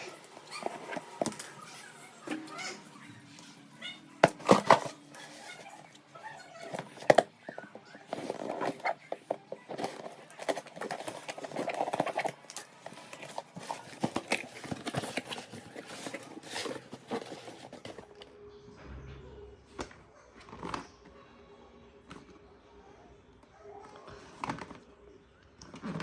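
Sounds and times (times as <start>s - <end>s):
packaging rustling and crinkling: 0.0s - 2.4s, 3.8s - 18.3s.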